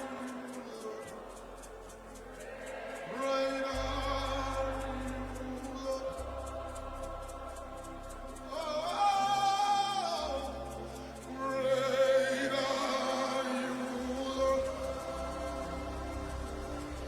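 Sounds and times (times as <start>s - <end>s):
person singing with vibrato: 0.0s - 17.0s
keyboard chords with bass: 3.6s - 13.2s, 13.9s - 17.0s.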